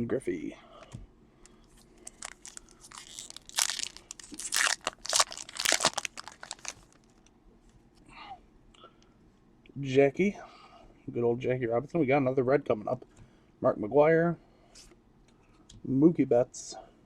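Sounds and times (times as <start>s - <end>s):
card pack wrapper crinkling: 2.0s - 7.2s.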